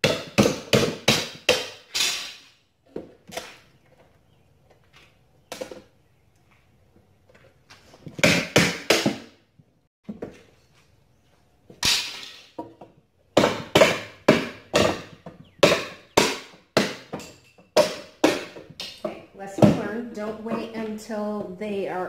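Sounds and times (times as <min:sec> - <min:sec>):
hammer striking wooden crate: 0:00.0 - 0:01.9, 0:08.2 - 0:09.3, 0:13.4 - 0:20.0.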